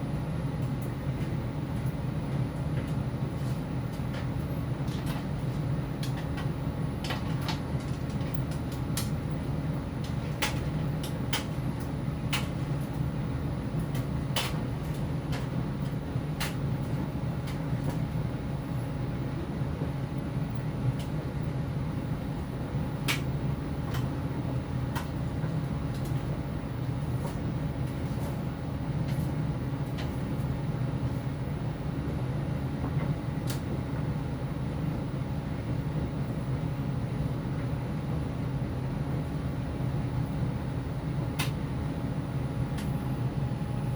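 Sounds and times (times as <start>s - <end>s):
tumble dryer drum humming: 0.0s - 43.9s
light clicks in dryer drum: 0.5s - 18.4s, 20.1s - 21.6s, 23.0s - 26.4s, 27.0s - 31.2s, 32.1s - 34.2s, 41.3s - 41.8s, 42.7s - 43.1s.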